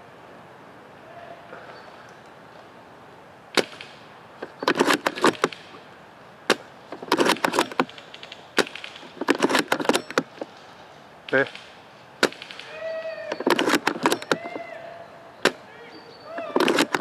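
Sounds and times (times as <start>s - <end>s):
airsoft gun single shots: 3.6s - 4.0s, 8.6s - 10.0s, 11.3s - 14.5s
rapid airsoft gun bursts: 11.3s - 14.6s.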